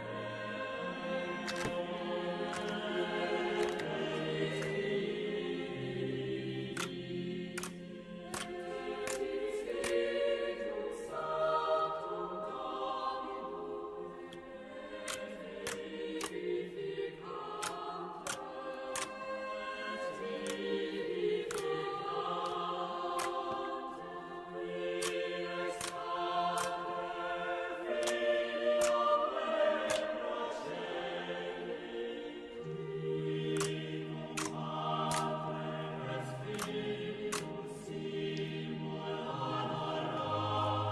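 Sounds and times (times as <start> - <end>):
choir-like background music: 0.0 - 40.9
sharp clicks: 1.4 - 1.8, 2.5 - 2.9, 3.6 - 4.8, 6.7 - 10.1, 15.0 - 16.5, 17.5 - 19.5, 20.2 - 20.7, 21.3 - 23.7, 25.0 - 26.9, 27.9 - 30.2, 33.5 - 35.7, 36.3 - 37.6.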